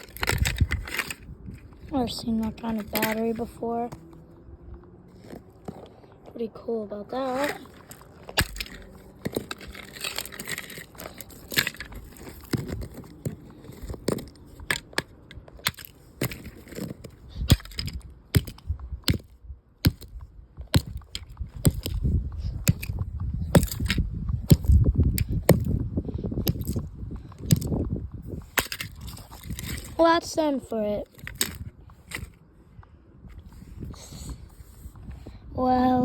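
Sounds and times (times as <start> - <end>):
plastic alarm clock being smashed: 8.4 - 8.8.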